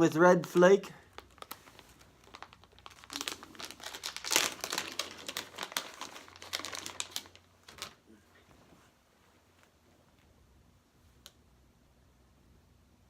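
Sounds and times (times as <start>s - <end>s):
plastic packaging crinkling: 1.0s - 8.0s.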